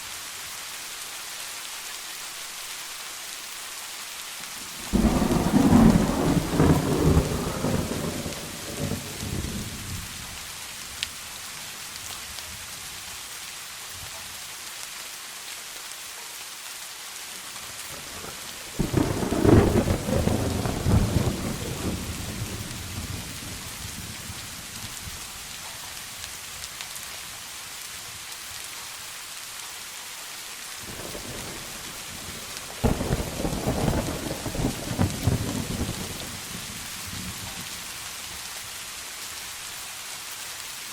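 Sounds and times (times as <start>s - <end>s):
steady rain: 0.0s - 40.9s
thunder rumbling: 4.8s - 10.2s, 17.9s - 24.5s, 30.9s - 37.5s.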